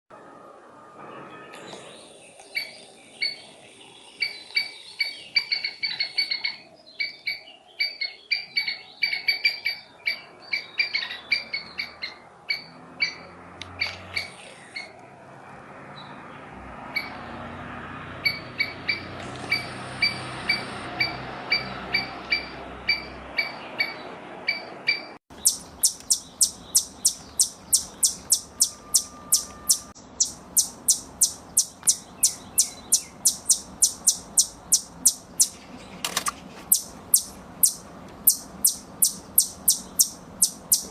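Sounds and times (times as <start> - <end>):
squirrel alarm calls: 4.2 - 14.9, 18.2 - 35.6, 36.7 - 40.9.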